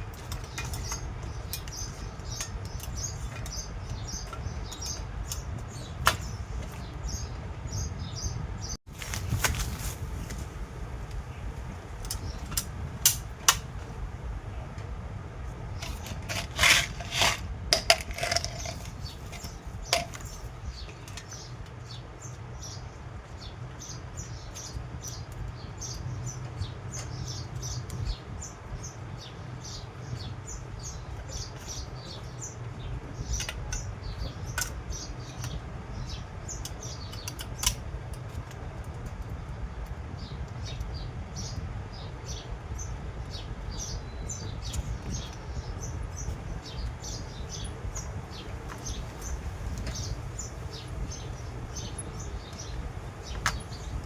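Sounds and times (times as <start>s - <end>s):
small birds chirping: 0.0s - 14.8s, 15.4s - 54.0s
steady low hum: 0.0s - 54.0s
sharp clicks and knocks: 0.1s - 6.9s, 47.6s - 54.0s.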